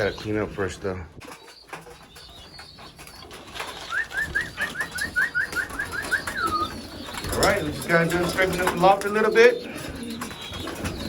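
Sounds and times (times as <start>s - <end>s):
pigeon wings flapping: 1.2s - 11.0s.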